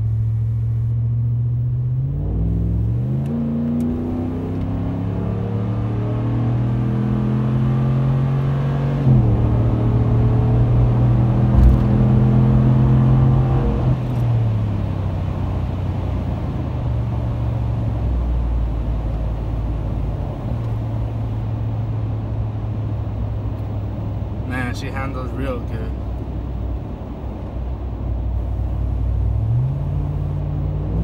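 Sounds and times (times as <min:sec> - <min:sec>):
road noise: 0:00.0 - 0:31.0
pickup truck exhaust rumble: 0:09.0 - 0:31.0.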